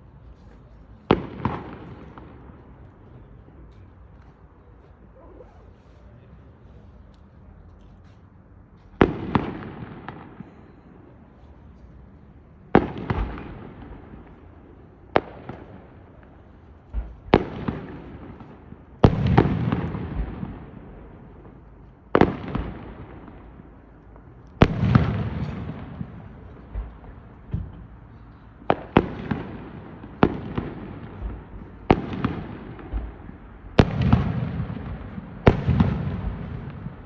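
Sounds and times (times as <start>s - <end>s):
fireworks bangs: 0.4s - 2.9s, 8.9s - 10.9s, 12.1s - 37.0s.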